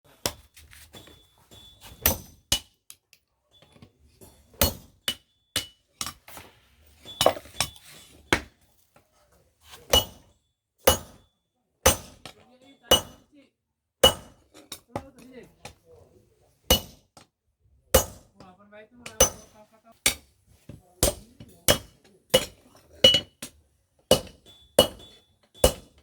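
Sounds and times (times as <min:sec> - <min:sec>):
hammer striking steel on anvil: 0:04.6 - 0:06.2, 0:09.9 - 0:13.2, 0:14.0 - 0:14.4, 0:16.7 - 0:17.0, 0:18.0 - 0:18.3, 0:19.1 - 0:20.3, 0:21.0 - 0:23.5, 0:24.1 - 0:26.0.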